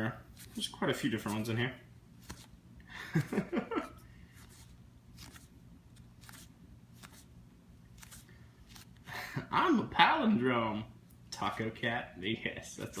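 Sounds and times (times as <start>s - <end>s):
playing cards flipping: 0.3s - 1.6s, 2.2s - 2.6s, 4.2s - 9.1s.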